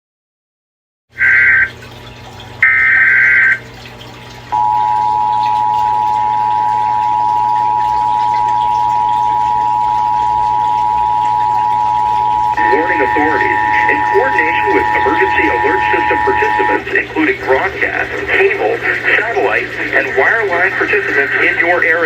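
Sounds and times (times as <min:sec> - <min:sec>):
steady two-tone attention signal: 0:02.6 - 0:03.6, 0:04.5 - 0:18.8
warbling data burst: 0:02.6 - 0:03.6, 0:04.6 - 0:18.8.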